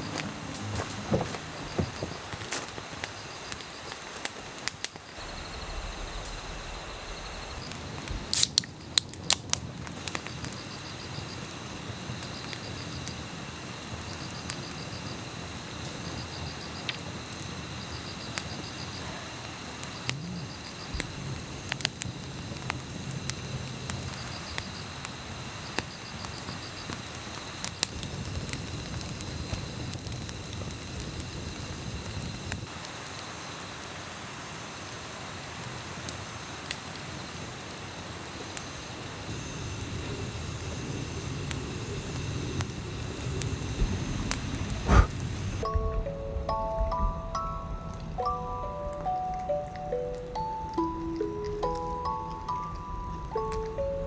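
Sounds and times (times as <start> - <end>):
background hiss: 0.0 - 54.0
insect chirping trills: 1.4 - 4.2, 4.8 - 54.0
sharp clicks: 7.6 - 10.6.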